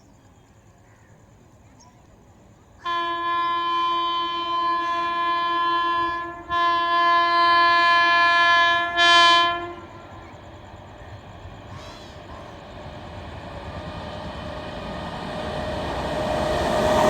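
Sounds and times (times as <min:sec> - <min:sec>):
locomotive air horn blasts: 0:02.8 - 0:10.6.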